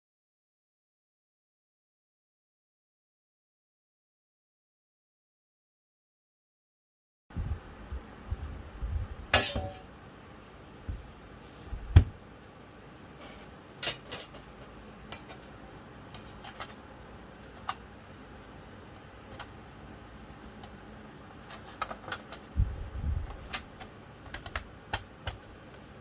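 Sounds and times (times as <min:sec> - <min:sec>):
small parts and tools clicking: 0:21.4 - 0:22.6.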